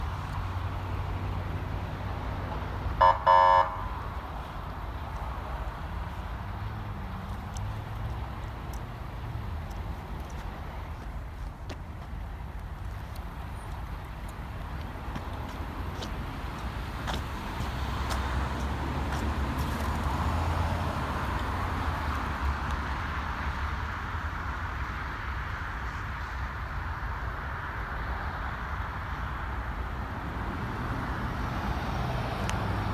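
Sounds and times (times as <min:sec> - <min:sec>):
steady traffic hum: 0:00.0 - 0:32.9
vehicle engine and tyre noise: 0:00.0 - 0:32.9.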